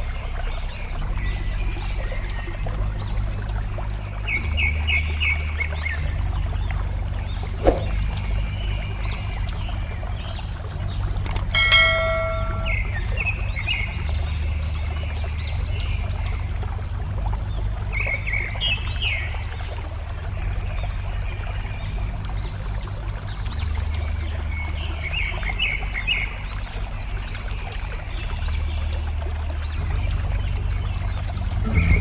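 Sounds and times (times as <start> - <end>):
babbling water: 0.0 - 13.3
deep steady rumble: 0.0 - 32.0.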